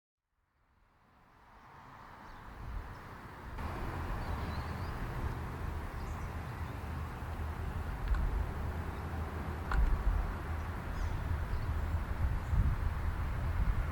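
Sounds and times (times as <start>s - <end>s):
steady rushing noise: 1.8s - 13.9s
locomotive engine rumble: 3.6s - 13.9s.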